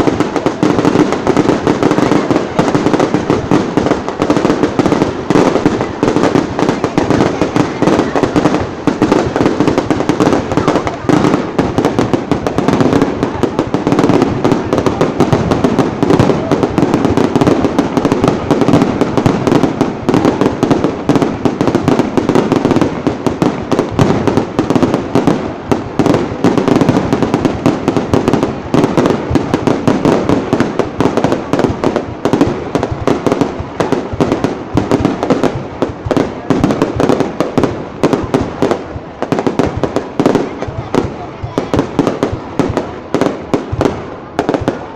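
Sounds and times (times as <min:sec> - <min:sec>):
fireworks bangs and crackling: 0:00.0 - 0:44.9.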